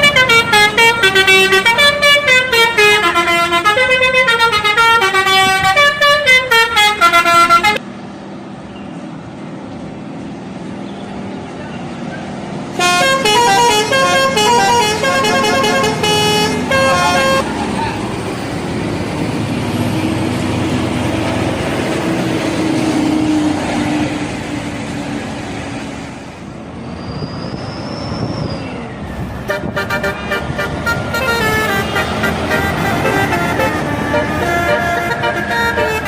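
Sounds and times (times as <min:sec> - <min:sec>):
bus horn playing a tune: 0:00.0 - 0:07.8, 0:12.8 - 0:17.5, 0:29.2 - 0:36.0
bus engine and traffic: 0:00.0 - 0:36.0.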